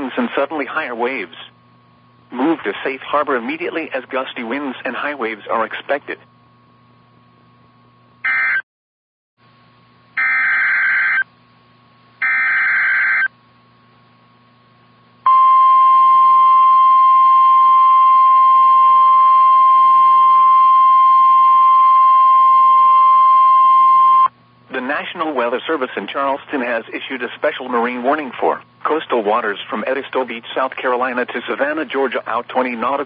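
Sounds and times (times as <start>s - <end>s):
steady alarm tone: 8.2s - 8.6s, 10.2s - 11.2s, 12.2s - 13.3s.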